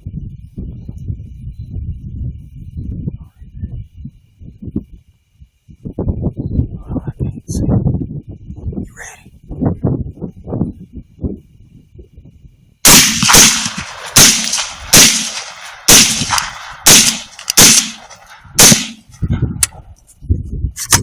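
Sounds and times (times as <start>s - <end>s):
gunshots: 12.8s - 19.2s.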